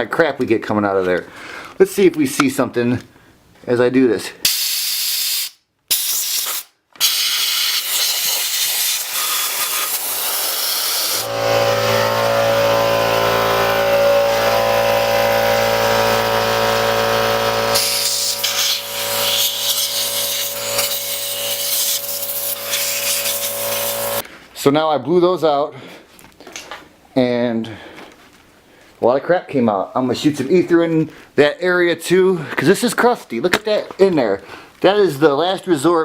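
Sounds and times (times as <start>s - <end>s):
compressed air blow gun hissing: 4.5s - 11.3s, 17.7s - 24.2s
steady machine hum: 10.9s - 24.2s.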